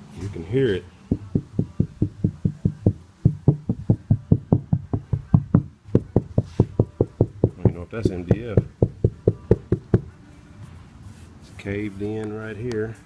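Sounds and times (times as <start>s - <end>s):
knuckles knocking on wooden panel: 1.1s - 10.1s.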